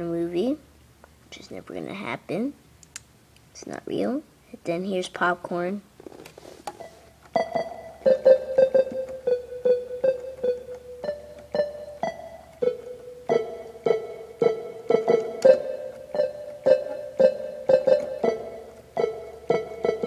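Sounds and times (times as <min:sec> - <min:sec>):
electronic keyboard short notes: 0:06.8 - 0:20.0.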